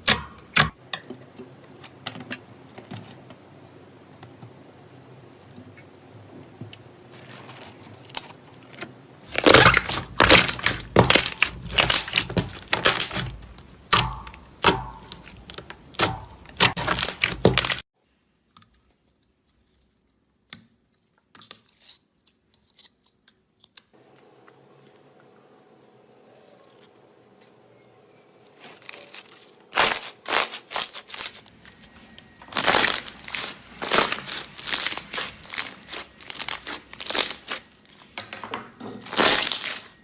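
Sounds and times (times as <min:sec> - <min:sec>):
slime crackling and popping: 0:07.2 - 0:17.8, 0:28.7 - 0:31.5, 0:32.5 - 0:38.2, 0:39.0 - 0:40.0.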